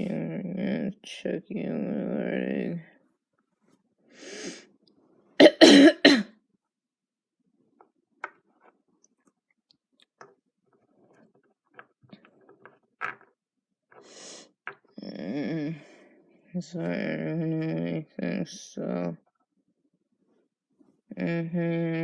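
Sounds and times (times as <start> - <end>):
woman coughing: 5.4 - 6.3.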